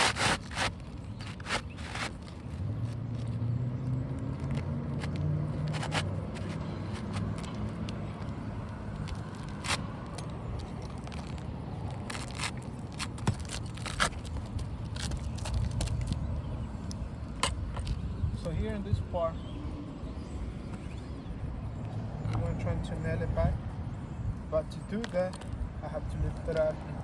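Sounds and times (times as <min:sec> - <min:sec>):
shingle scraping and rustling: 0:00.0 - 0:03.5, 0:04.2 - 0:18.2
low engine hum: 0:00.9 - 0:24.6.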